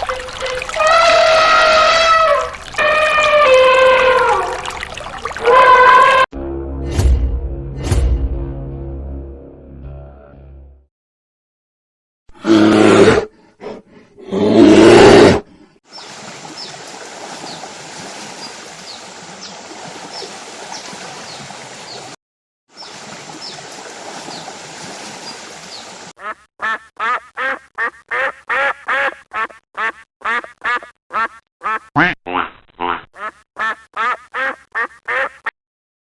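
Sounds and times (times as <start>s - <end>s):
duck quacking: 26.2s - 35.5s.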